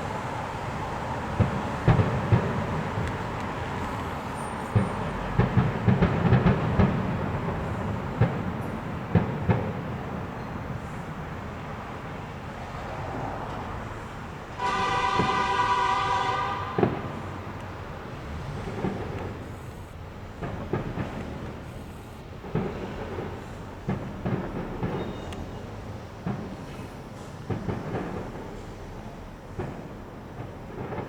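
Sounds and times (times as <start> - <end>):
fireworks bangs and crackles: 0.0 - 31.0
fireworks rumble: 0.0 - 31.0
steady horn-like tone: 14.6 - 18.5.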